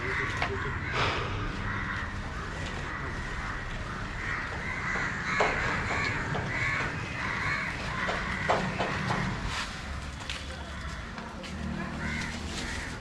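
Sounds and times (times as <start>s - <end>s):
steady low hum: 0.0s - 7.4s
birds calling: 0.0s - 13.0s.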